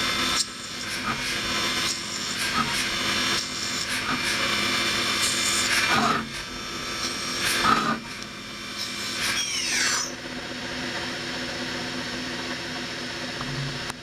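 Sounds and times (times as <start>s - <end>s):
drill rasp: 0.0s - 10.2s
mill machine hum: 0.0s - 14.0s.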